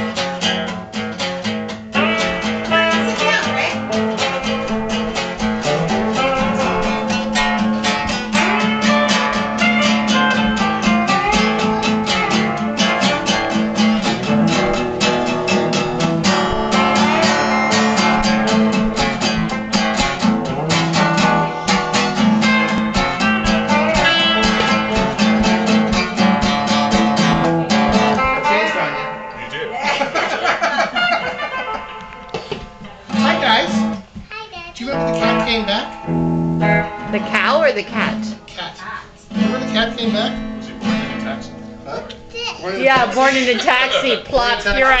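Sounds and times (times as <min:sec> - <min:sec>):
acoustic guitar strumming: 0:00.0 - 0:45.0.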